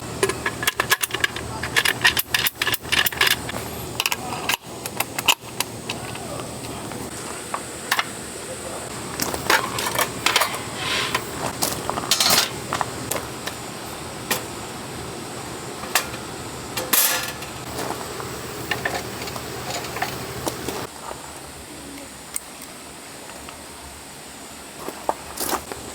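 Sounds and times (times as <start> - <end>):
objects being handled: 8.9 - 14.6, 15.7 - 20.9.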